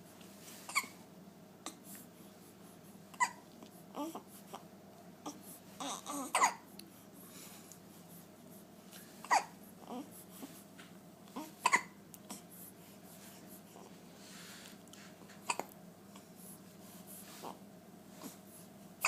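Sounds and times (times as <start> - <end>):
baby hiccuping: 0.7 - 0.9, 5.8 - 6.6, 9.2 - 9.5, 11.6 - 12.0.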